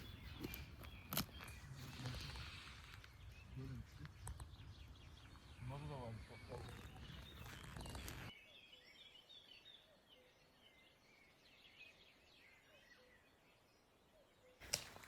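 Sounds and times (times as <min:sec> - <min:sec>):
rustling noise: 0:00.0 - 0:04.2
birds chirping and twittering: 0:00.0 - 0:15.0.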